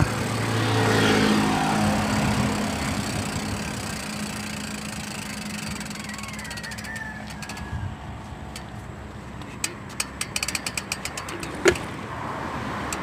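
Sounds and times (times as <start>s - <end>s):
low engine hum: 0.0s - 10.2s
bicycle freehub clicking: 2.0s - 7.8s, 8.4s - 12.0s, 12.8s - 13.0s.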